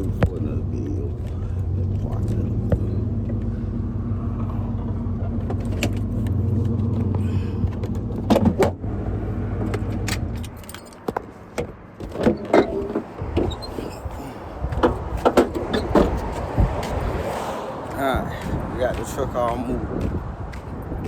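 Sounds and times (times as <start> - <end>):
vehicle engine idling: 0.0 - 12.0
sharp clicks knocks and rattles: 5.2 - 8.8, 14.7 - 17.0.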